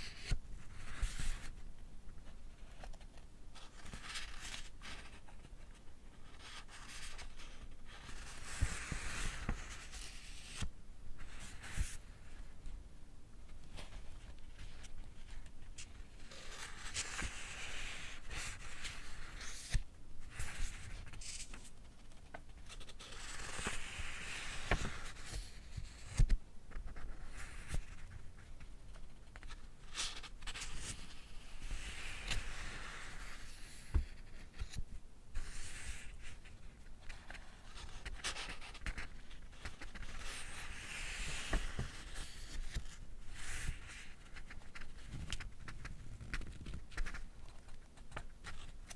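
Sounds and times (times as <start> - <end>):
book pages turning: 13.6 - 28.1, 37.1 - 48.9.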